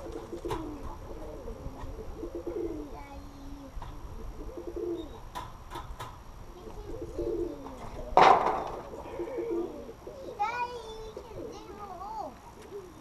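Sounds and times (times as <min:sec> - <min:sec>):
pigeons cooing: 0:00.0 - 0:13.0.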